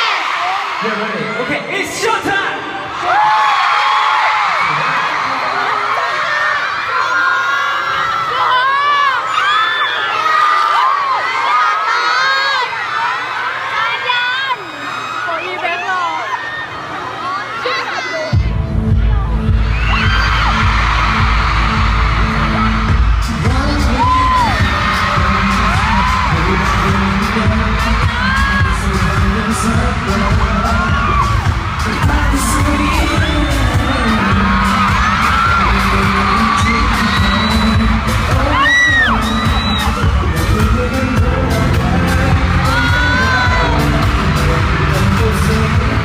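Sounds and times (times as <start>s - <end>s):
crowd screaming and cheering: 0.0s - 46.0s
pop music with thumping bass: 18.4s - 46.0s.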